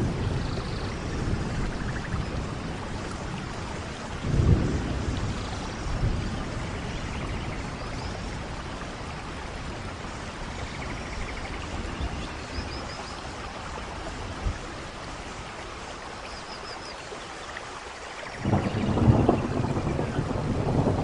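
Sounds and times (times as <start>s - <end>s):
steady rain: 0.0s - 21.0s.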